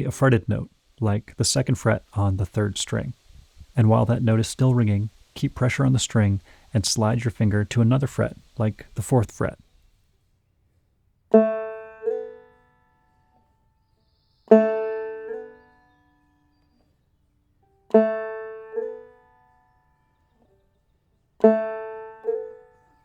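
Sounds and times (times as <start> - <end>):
banjo note sliding up: 11.3 - 12.6, 14.5 - 15.8, 17.9 - 19.4, 21.4 - 22.8.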